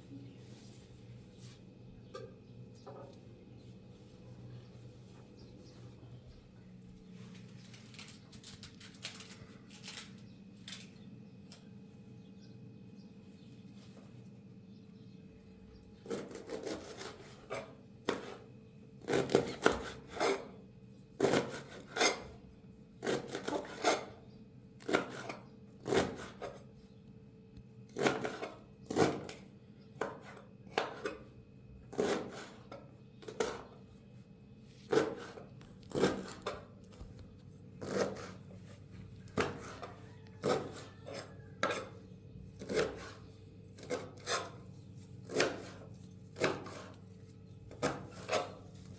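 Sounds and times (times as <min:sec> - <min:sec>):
knife chopping: 0:16.1 - 0:18.4, 0:24.8 - 0:26.6, 0:31.9 - 0:32.6, 0:34.8 - 0:36.7, 0:37.8 - 0:38.4, 0:39.3 - 0:41.9, 0:42.6 - 0:43.2, 0:43.8 - 0:44.6, 0:45.2 - 0:47.0, 0:47.7 - 0:48.6.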